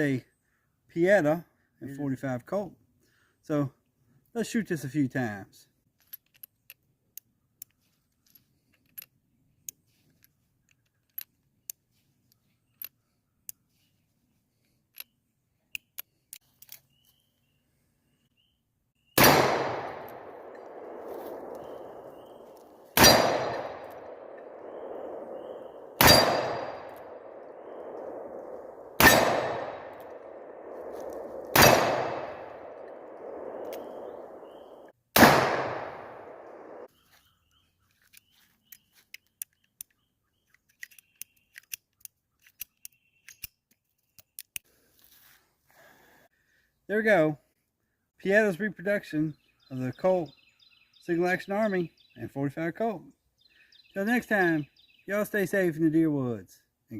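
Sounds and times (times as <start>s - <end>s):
gunshots with echo: 19.2s - 36.9s.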